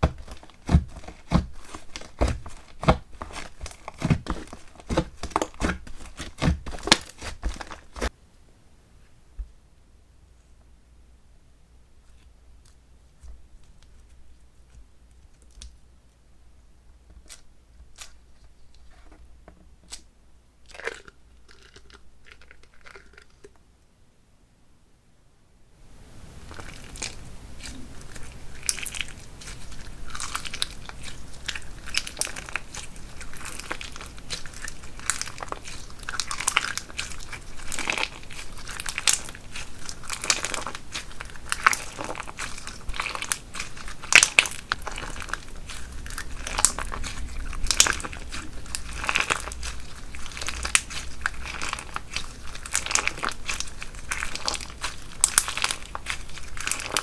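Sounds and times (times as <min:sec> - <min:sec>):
crunchy slime crackling and popping: 0:00.0 - 0:08.1, 0:20.7 - 0:23.5, 0:26.3 - 0:57.0.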